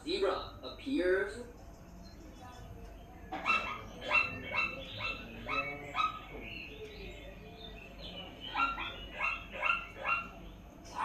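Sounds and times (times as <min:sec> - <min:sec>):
faint animal calls: 0:03.3 - 0:06.8, 0:08.2 - 0:11.0.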